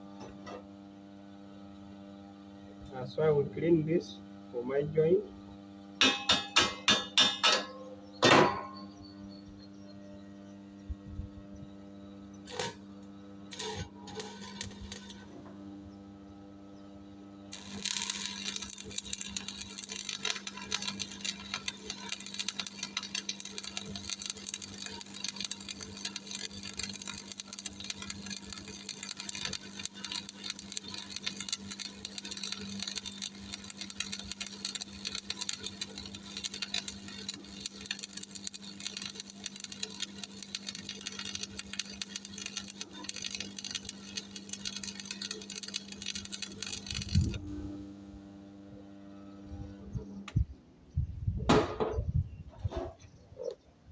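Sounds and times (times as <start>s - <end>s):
welder hum: 0.0s - 51.8s
welding arc crackling: 10.9s - 49.6s.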